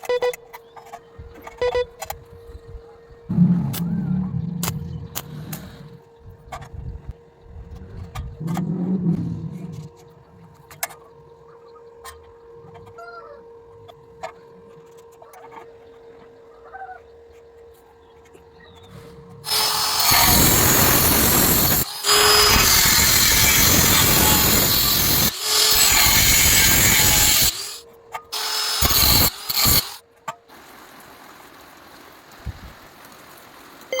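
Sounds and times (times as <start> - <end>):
angle grinder cutting steel: 19.4 - 30.0.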